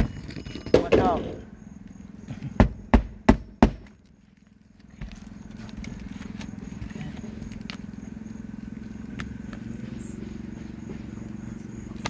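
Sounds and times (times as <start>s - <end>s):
hammer striking nail: 2.6s - 4.0s.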